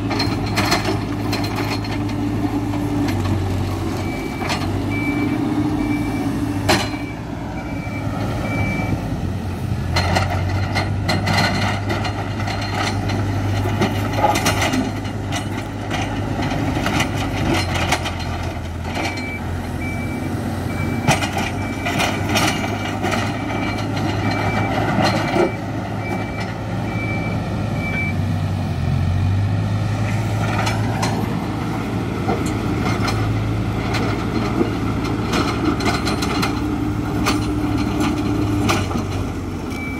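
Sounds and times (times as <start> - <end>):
diesel engine running under load: 0.0 - 39.9
reversing alarm beeping: 4.0 - 9.0, 19.0 - 28.2
knocks and clatter: 9.9 - 19.3, 32.2 - 39.3.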